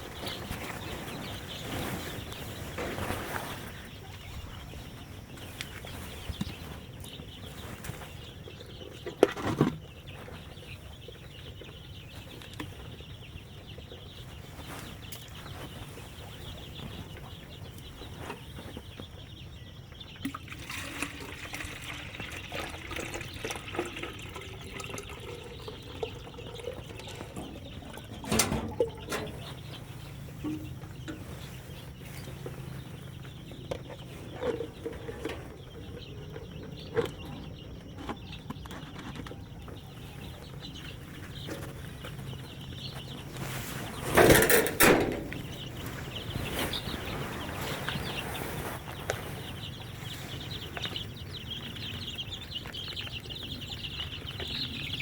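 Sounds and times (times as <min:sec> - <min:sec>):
steady rustle: 0:00.0 - 0:08.8, 0:09.4 - 0:19.0, 0:27.0 - 0:36.9, 0:38.7 - 0:53.9
chickens clucking: 0:00.0 - 0:55.0.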